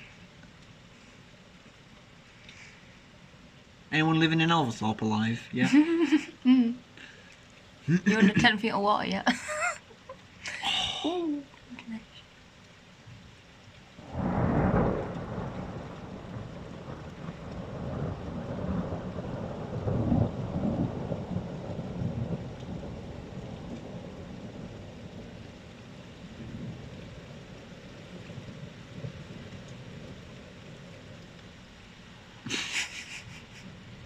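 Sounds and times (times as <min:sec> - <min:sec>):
steady rain: 0:00.0 - 0:34.0
thunderclap rumbling: 0:14.0 - 0:31.6.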